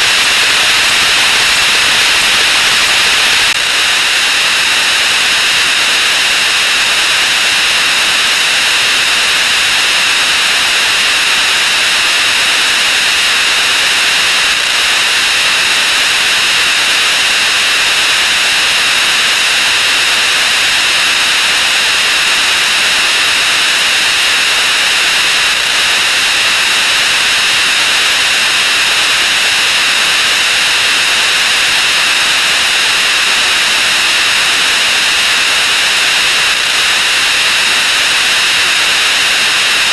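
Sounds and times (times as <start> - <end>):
loud static-like hiss: 0.0 - 39.9.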